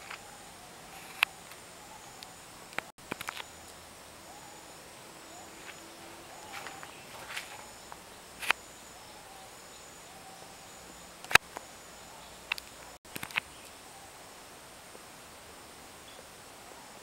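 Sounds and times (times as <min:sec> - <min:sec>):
faint animal calls: 0:00.0 - 0:14.3
faint insect drone: 0:00.0 - 0:17.0
sharp clicks or knocks: 0:02.7 - 0:03.5.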